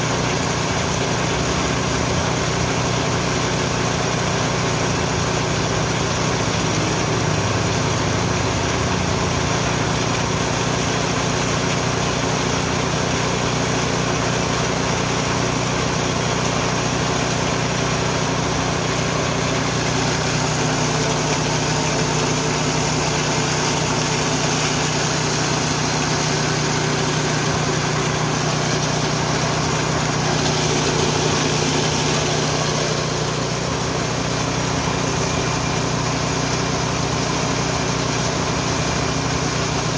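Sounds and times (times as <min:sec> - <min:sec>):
milling machine running: 0:00.0 - 0:39.9
low engine hum: 0:16.1 - 0:39.9.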